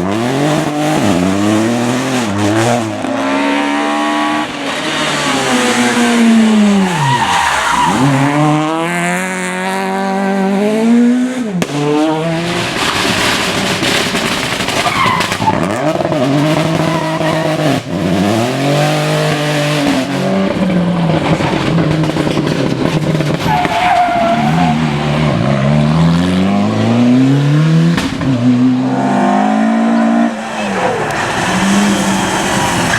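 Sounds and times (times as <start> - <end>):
rally car engine revving: 0.0 - 32.9
tyre squeal: 23.4 - 25.0, 29.9 - 32.9.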